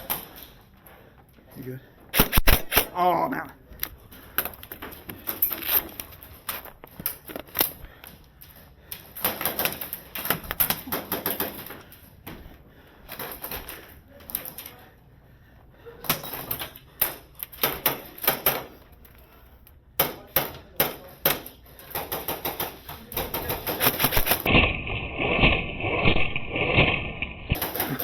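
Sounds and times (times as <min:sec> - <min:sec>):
airsoft guns firing: 0:02.1 - 0:03.0, 0:20.0 - 0:24.5, 0:27.5 - 0:28.0.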